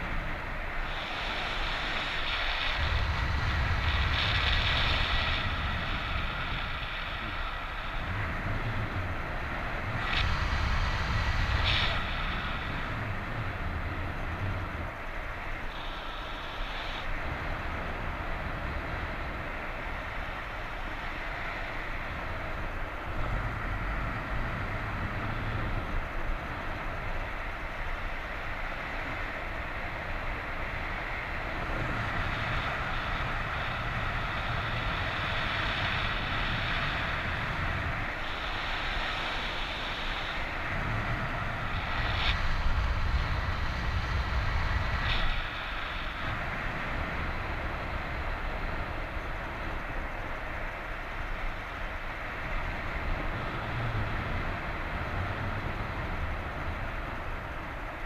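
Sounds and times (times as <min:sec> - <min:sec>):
wind rushing over microphone: 0:00.0 - 0:58.0.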